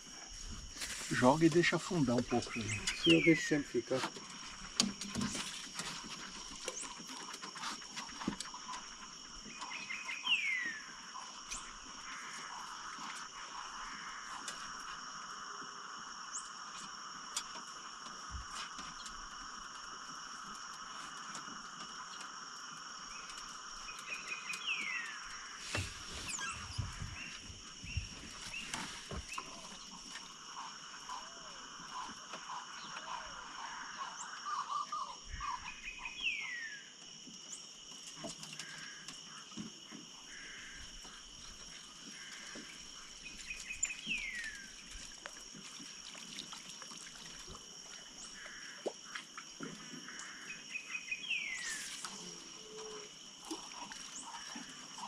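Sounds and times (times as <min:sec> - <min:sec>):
insects trilling: 0:00.0 - 0:55.0
frog croaking: 0:21.9 - 0:36.9, 0:38.2 - 0:45.4, 0:47.2 - 0:55.0
soft knocks and thuds: 0:25.6 - 0:29.8.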